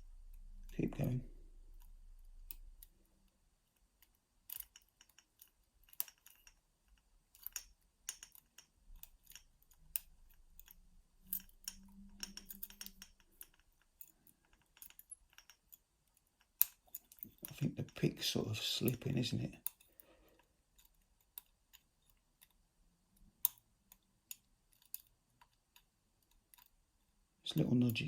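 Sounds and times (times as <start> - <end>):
lock picking tools clicking: 4.0 - 17.6, 23.4 - 26.7.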